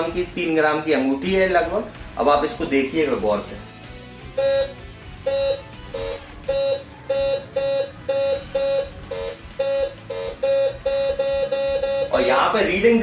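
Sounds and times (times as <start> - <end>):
metal detector beeping: 4.4 - 12.4.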